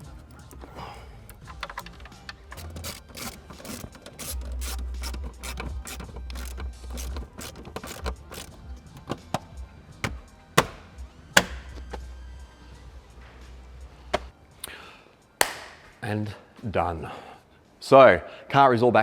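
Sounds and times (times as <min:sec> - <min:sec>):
plastic trim clicking into place: 0:00.0 - 0:10.8, 0:11.4 - 0:12.0
sharp knocks on panels: 0:07.4 - 0:11.9.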